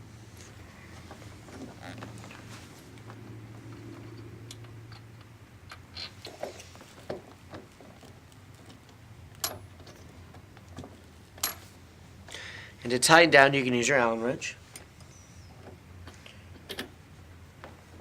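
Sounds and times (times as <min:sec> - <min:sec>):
faint steady hum: 0:00.0 - 0:18.0
metal bolt and washers clicking: 0:08.0 - 0:10.4, 0:11.4 - 0:11.7, 0:16.0 - 0:17.0.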